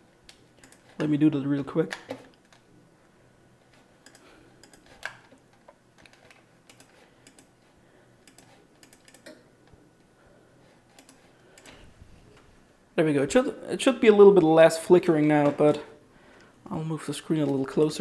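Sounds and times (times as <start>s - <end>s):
keyboard and mouse clicking: 0.3s - 1.0s, 4.0s - 5.4s, 6.0s - 7.5s, 8.2s - 9.4s, 10.9s - 11.8s.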